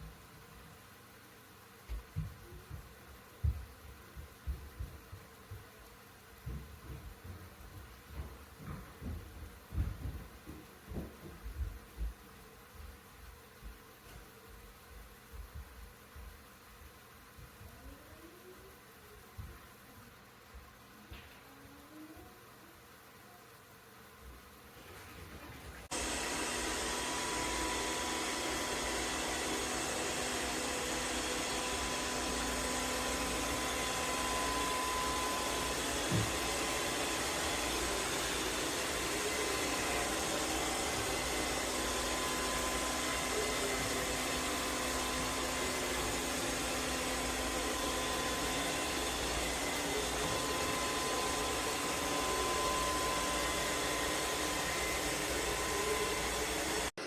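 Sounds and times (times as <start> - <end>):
robot vacuum whirring: 25.3 - 57.0.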